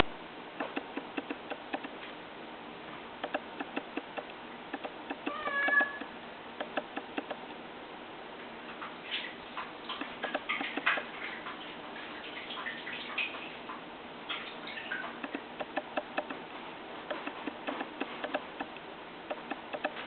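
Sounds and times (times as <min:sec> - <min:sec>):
light irregular clicks: 0:00.0 - 0:02.0, 0:03.2 - 0:07.5, 0:15.2 - 0:16.4, 0:17.1 - 0:20.0
cat meowing: 0:05.3 - 0:06.1.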